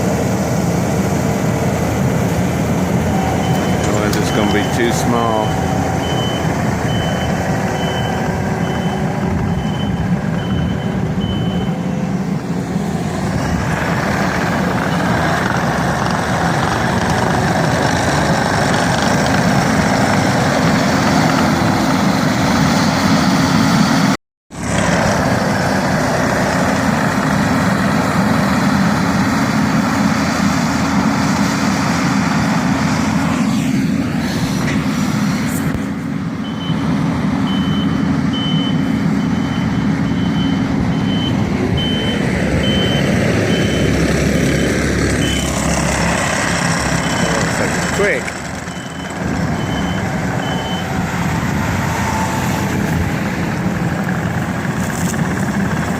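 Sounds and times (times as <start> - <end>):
diesel engine running hard: 0.0 - 55.9
stump grinder working: 1.0 - 11.4, 12.0 - 23.6, 24.6 - 31.2, 42.6 - 55.9
reverse alarm beeping: 3.1 - 11.8, 36.4 - 36.9, 37.5 - 45.6, 48.7 - 51.0.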